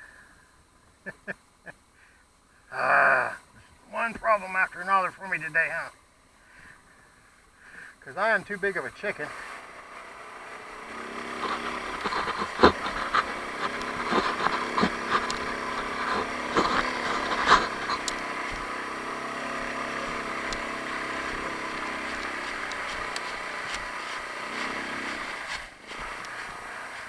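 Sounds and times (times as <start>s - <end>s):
atv engine running: 9.2s - 27.0s
sharp knocks and rattles: 10.8s - 26.6s.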